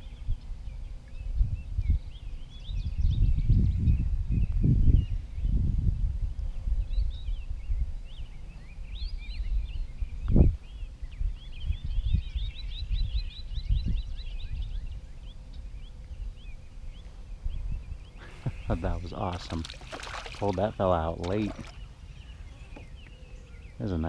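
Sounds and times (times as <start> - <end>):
small birds chirping: 6.6 - 24.0.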